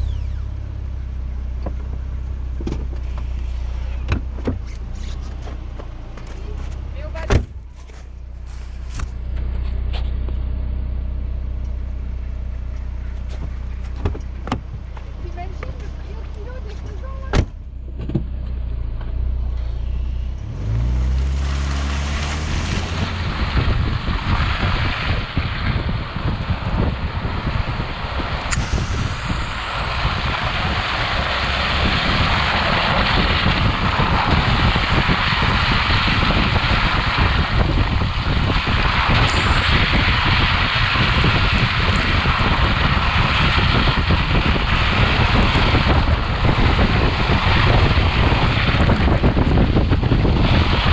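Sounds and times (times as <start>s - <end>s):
car engine running: 0.0s - 50.9s
wind buffeting camera: 19.0s - 50.9s.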